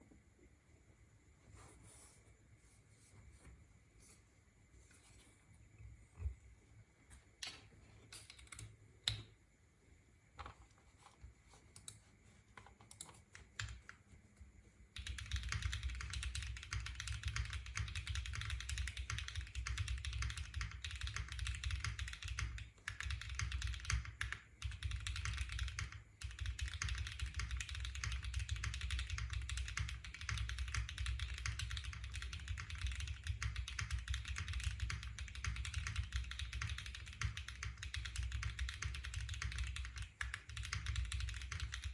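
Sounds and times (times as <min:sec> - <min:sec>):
typing on mechanical keyboard: 0:07.4 - 0:09.3, 0:11.7 - 0:14.0, 0:14.9 - 0:41.9.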